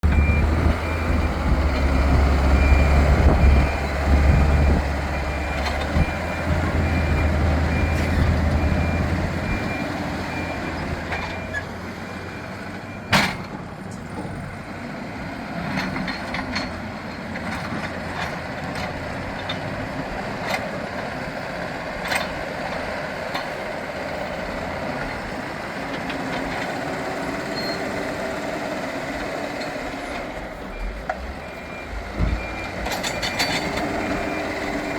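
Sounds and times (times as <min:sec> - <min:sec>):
reversing alarm beeping: 0:00.0 - 0:13.2, 0:27.4 - 0:28.5, 0:29.4 - 0:34.9
diesel engine rumbling: 0:00.0 - 0:34.9.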